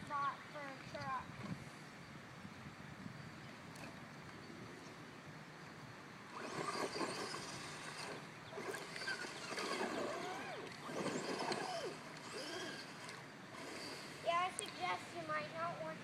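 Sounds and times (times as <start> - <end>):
electric motor revving: 6.3 - 14.6.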